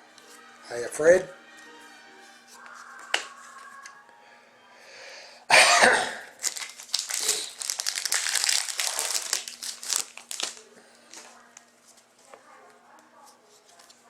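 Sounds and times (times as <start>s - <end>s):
foil wrapper crinkling: 6.3s - 12.5s.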